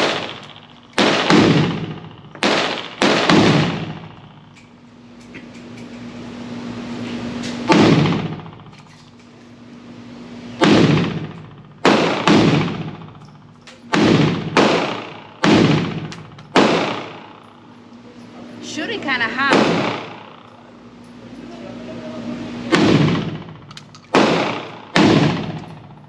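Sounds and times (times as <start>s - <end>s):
pistol gunshots echoing: 0.0s - 4.4s, 10.6s - 13.2s, 13.9s - 17.4s, 19.5s - 20.5s, 22.7s - 25.9s.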